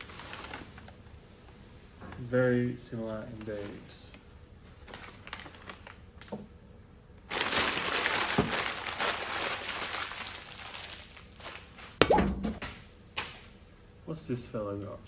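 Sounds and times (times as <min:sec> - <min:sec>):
packaging wrap crinkling: 0:04.9 - 0:06.0, 0:07.3 - 0:12.0.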